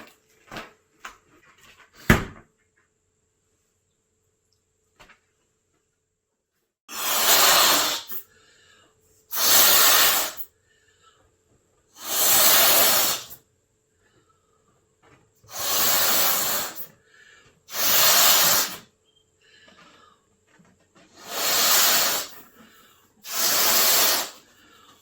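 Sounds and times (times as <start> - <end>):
air hissing from balloon neck: 6.9 - 8.4, 9.2 - 10.5, 12.0 - 13.4, 15.4 - 19.0, 21.0 - 25.0.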